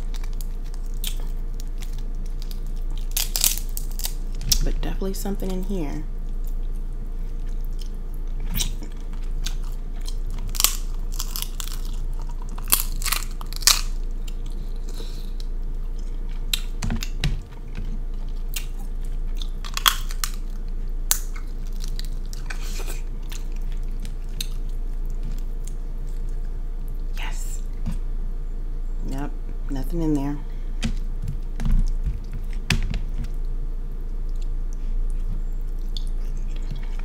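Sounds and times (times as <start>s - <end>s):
chewing and biting: 0.0s - 4.6s, 6.2s - 27.1s, 33.3s - 37.0s
crab shell cracking: 0.0s - 4.7s, 7.6s - 15.6s, 18.4s - 26.5s
low hum: 0.0s - 37.0s.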